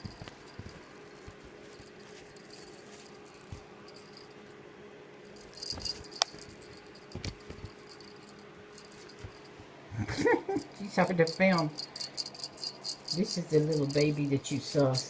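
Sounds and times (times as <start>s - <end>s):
faint steady hum: 0.0s - 15.0s
kitten clicks and rattling knocks: 5.3s - 9.5s.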